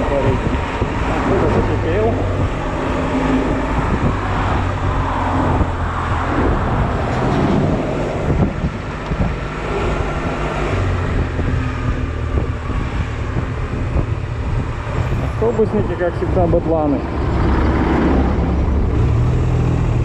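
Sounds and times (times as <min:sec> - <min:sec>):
surrounding traffic: 0:00.0 - 0:20.0
wind noise on microphone: 0:00.0 - 0:20.0.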